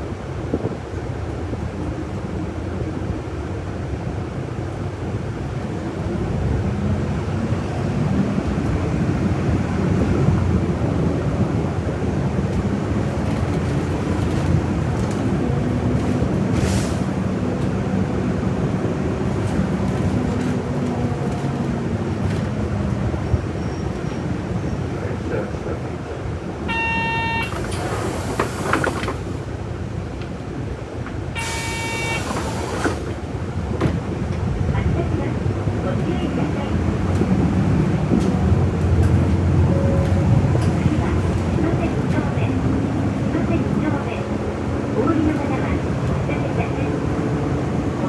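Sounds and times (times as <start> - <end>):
bus engine and road rumble: 0.0 - 48.0
air hiss burst: 31.4 - 33.2.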